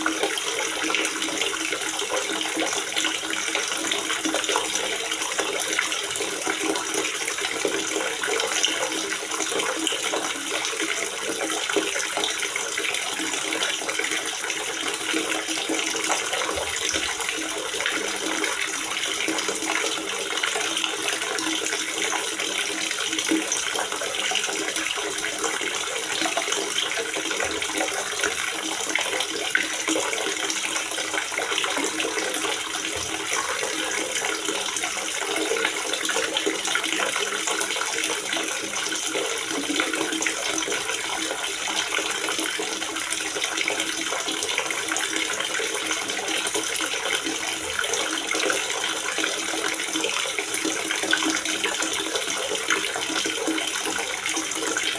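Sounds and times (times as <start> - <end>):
water gurgling into reservoir: 0.0 - 54.9.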